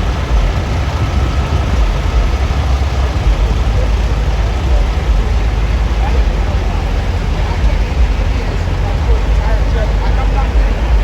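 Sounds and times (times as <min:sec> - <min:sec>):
diesel truck engines idling: 0:00.0 - 0:11.0.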